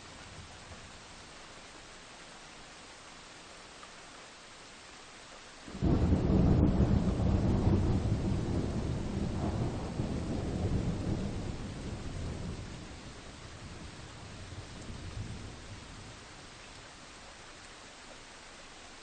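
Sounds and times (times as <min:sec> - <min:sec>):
rain hiss: 0:00.0 - 0:19.0
thunder rumble: 0:05.7 - 0:16.2.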